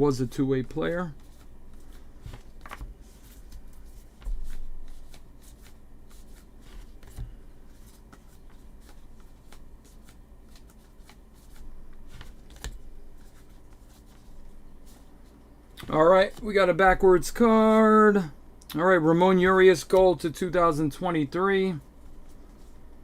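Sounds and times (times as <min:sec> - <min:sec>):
trading cards flipping and rustling: 0:00.6 - 0:16.7.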